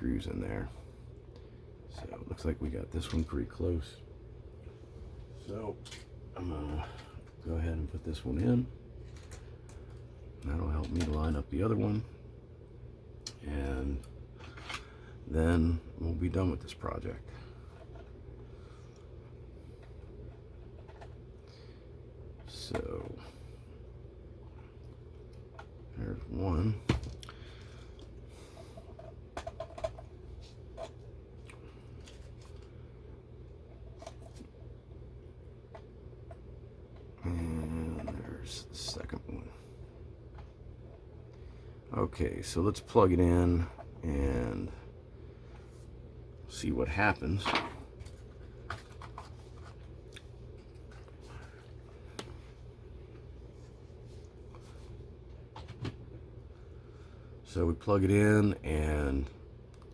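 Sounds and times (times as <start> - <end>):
steady low hum: 0.0 - 59.9
handling noises: 47.3 - 56.2.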